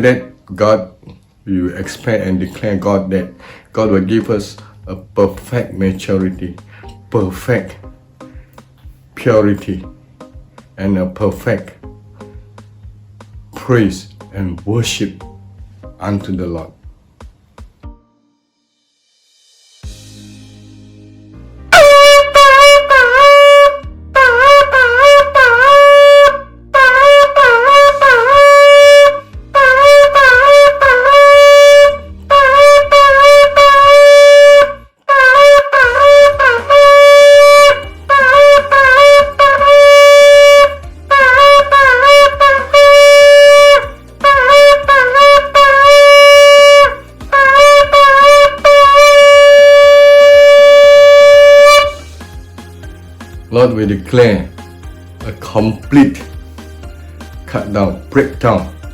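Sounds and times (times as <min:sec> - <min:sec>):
shofar blasts: 0:21.7 - 0:52.1.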